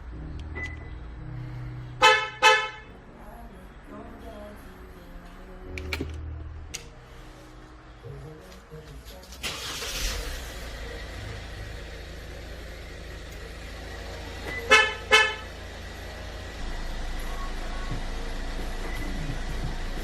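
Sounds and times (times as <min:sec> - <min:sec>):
car horn chirps: 0:02.0 - 0:02.9, 0:14.4 - 0:15.6.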